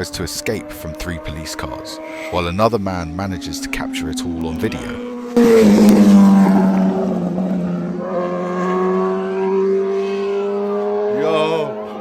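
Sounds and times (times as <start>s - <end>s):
vehicle engine speeding past: 1.0s - 2.4s, 3.2s - 12.0s
second engine note rising: 2.4s - 10.2s.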